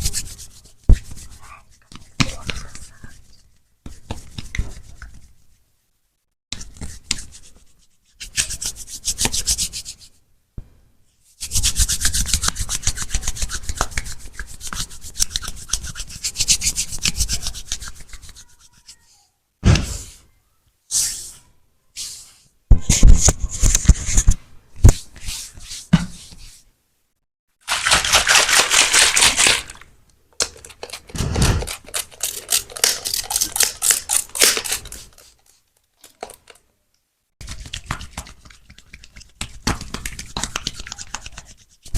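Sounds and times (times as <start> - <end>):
hands rubbing against skin: 11.4 - 19.0, 37.4 - 41.9.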